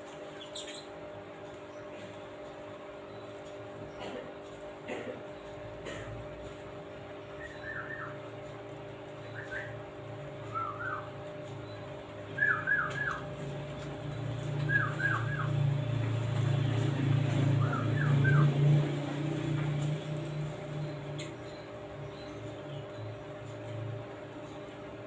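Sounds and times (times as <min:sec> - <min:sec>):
steady low hum: 0:00.0 - 0:25.0
lovebird chirping: 0:00.2 - 0:00.9.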